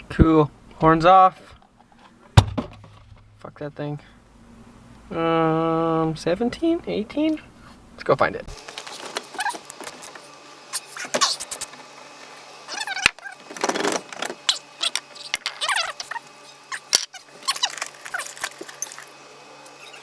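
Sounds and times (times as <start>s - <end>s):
short squeaks: 10.7s - 11.6s, 14.4s - 19.0s, 19.7s - 20.0s.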